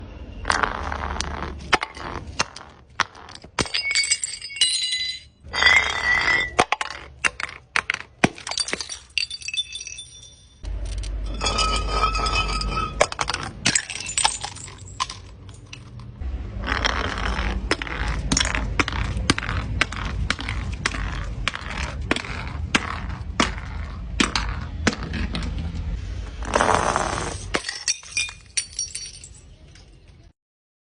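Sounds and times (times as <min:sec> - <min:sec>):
glass bottles being crushed: 0:01.7 - 0:16.0, 0:27.3 - 0:30.0.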